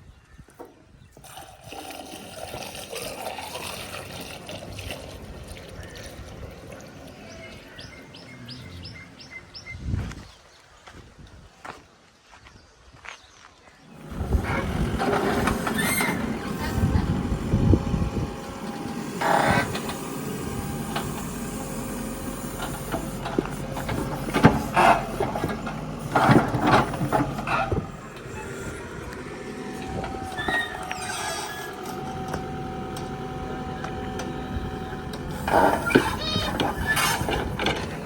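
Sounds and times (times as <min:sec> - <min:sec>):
diesel engine running: 0:04.0 - 0:09.8, 0:13.9 - 0:38.0.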